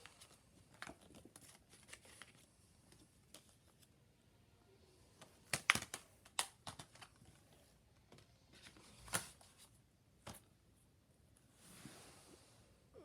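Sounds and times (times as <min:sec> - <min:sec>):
paper rustling: 0:00.0 - 0:03.9.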